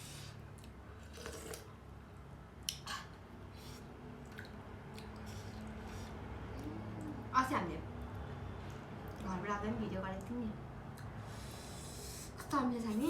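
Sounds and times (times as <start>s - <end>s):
person chewing wetly: 0.4s - 1.8s, 2.6s - 7.3s, 8.1s - 9.3s, 10.9s - 11.2s.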